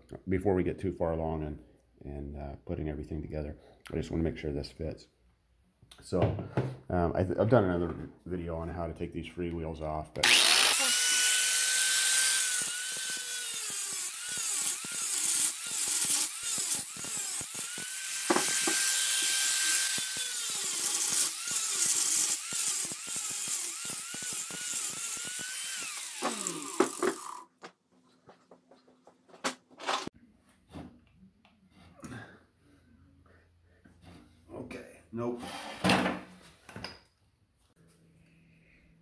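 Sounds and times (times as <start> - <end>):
power tool whining: 10.2 - 27.6.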